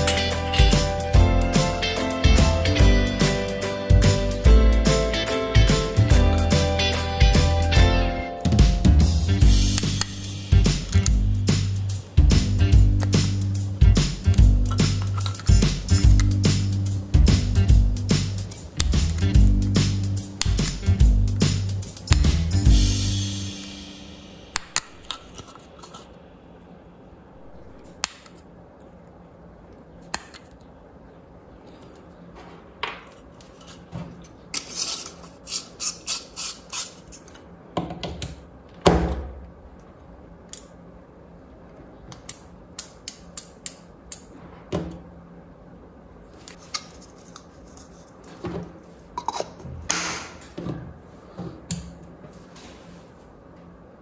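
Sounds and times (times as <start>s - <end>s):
small tools clicking and scraping: 14.7s - 16.3s, 33.1s - 37.5s.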